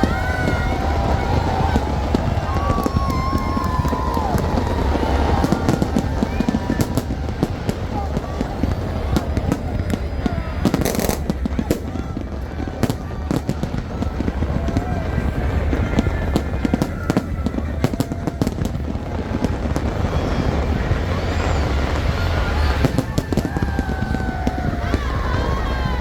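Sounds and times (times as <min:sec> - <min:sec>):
fireworks bangs: 0:00.0 - 0:26.0
low rumble of explosions: 0:00.0 - 0:26.0.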